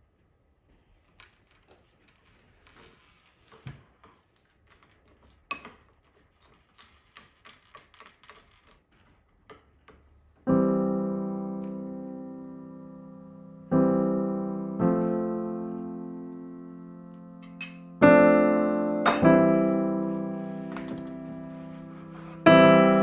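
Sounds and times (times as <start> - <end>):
piano chord ringing: 10.5 - 23.0.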